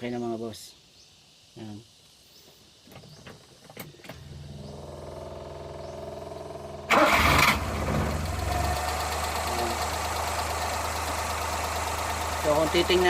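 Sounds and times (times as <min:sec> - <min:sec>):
engine cranking and starting: 0:03.8 - 0:13.0.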